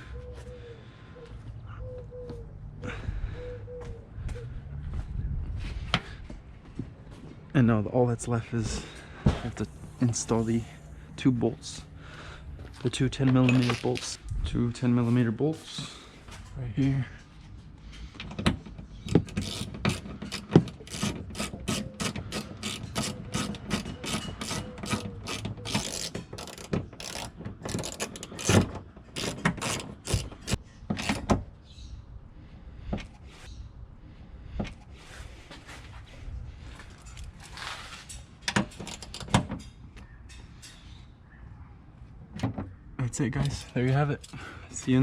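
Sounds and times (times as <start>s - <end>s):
hand ratchet clicking: 19.1s - 31.3s.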